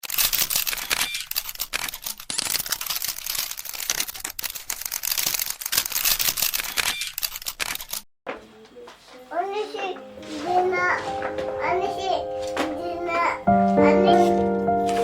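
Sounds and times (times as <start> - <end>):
sharp rapid clicks: 0.0 - 8.0
crackly rustling: 0.0 - 15.0.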